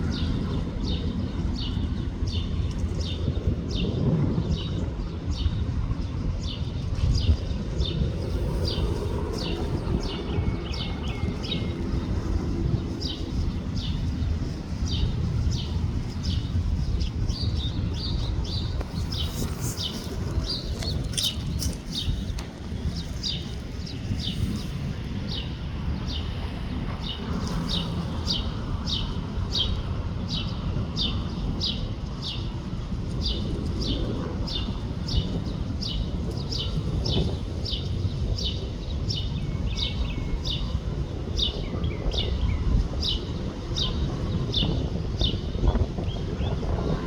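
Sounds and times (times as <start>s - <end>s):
bird chirping: 17.3s - 22.2s.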